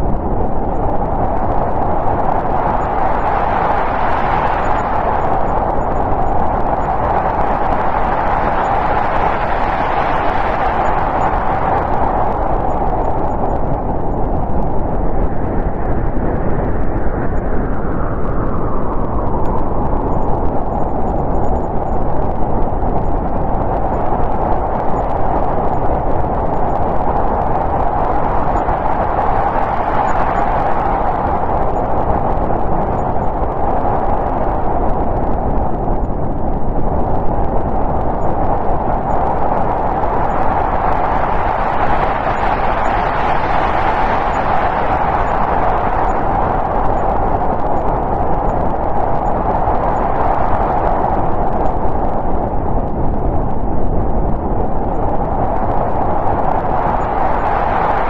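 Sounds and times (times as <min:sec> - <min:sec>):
snowstorm wind blowing: 0:00.0 - 0:58.0.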